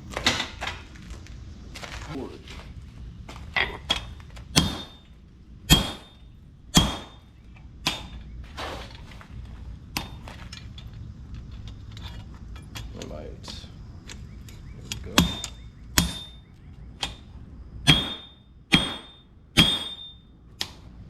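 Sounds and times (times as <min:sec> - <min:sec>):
hammer striking anvil: 0:03.6 - 0:05.1, 0:05.7 - 0:07.2, 0:14.9 - 0:17.2, 0:17.9 - 0:20.3.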